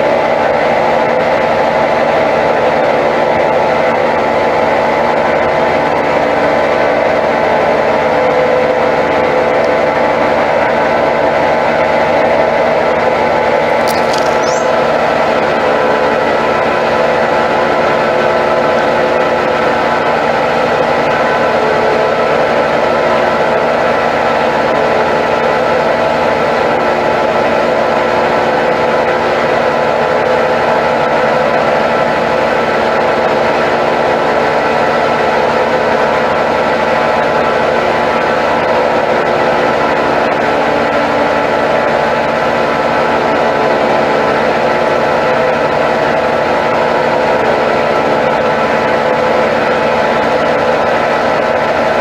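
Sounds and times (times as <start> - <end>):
washing machine spinning whine: 0.0 - 52.0.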